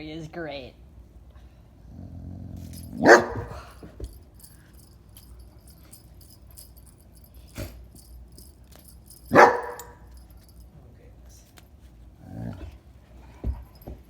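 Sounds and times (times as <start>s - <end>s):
dog grumbling: 1.9s - 3.7s, 12.2s - 12.8s
dog barking: 3.0s - 3.7s, 9.3s - 10.1s.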